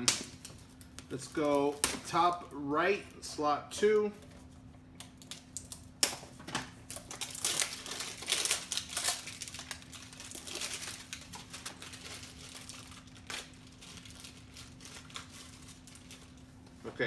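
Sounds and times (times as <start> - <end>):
faint steady hum: 0.0 - 17.0
packaging crinkling and rustling: 4.4 - 16.7.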